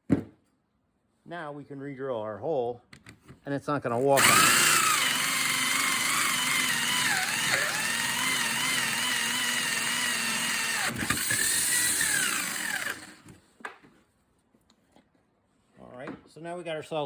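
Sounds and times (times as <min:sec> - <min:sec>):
power drill motor whine: 0:04.0 - 0:13.4.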